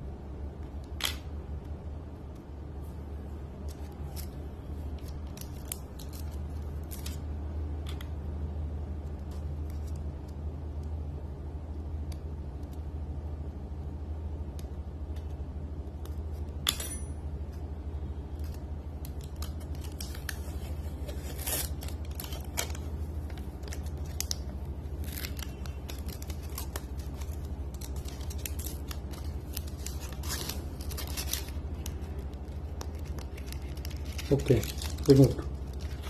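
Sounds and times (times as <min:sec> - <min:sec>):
steady low hum: 0:00.0 - 0:36.0
protective film peeling off: 0:18.3 - 0:36.0.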